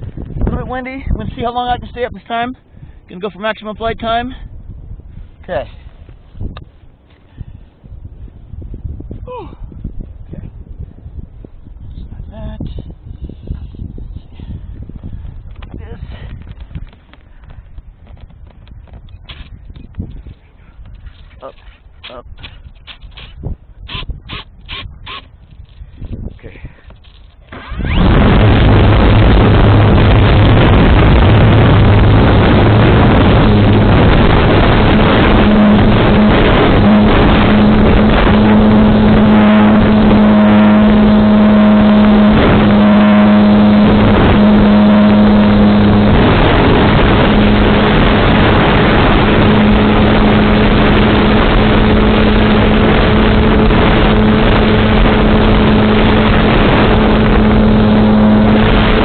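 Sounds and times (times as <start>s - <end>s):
electric motor and propeller hum: 13.0s - 59.0s
wind rushing: 27.6s - 59.0s.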